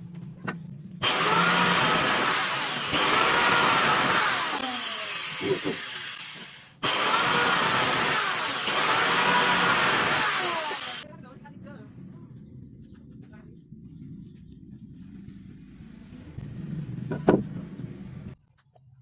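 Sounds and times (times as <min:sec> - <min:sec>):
angle grinder grinding wood: 0:01.0 - 0:11.0.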